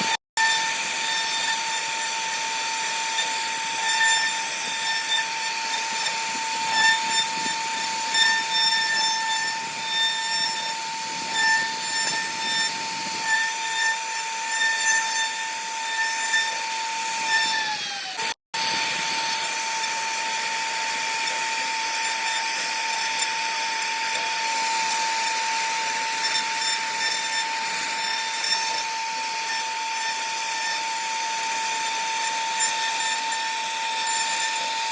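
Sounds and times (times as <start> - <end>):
cnc router spindle whine: 0.0 - 34.9
router bit carving wood: 0.0 - 34.9.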